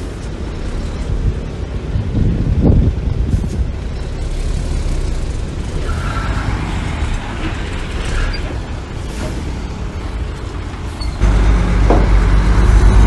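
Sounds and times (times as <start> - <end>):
diesel machinery rumbling: 0.0 - 13.0
short high squeaks: 11.0 - 11.2.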